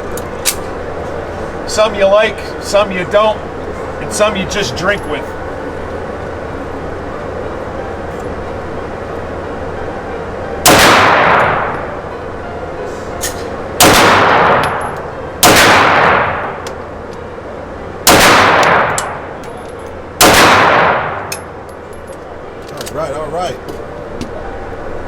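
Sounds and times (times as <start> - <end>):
pistol shots echoing indoors: 10.6 - 11.8, 13.8 - 16.8, 18.0 - 19.5, 20.2 - 21.5.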